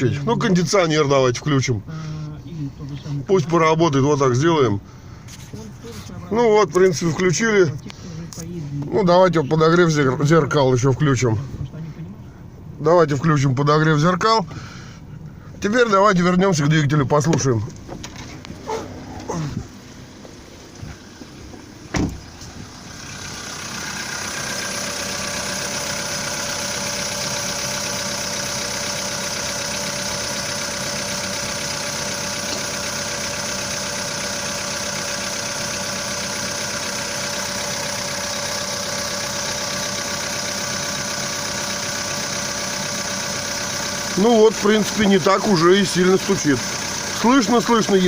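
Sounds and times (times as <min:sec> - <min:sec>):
car engine idling: 0:00.0 - 0:48.0
thud: 0:21.9 - 0:22.4.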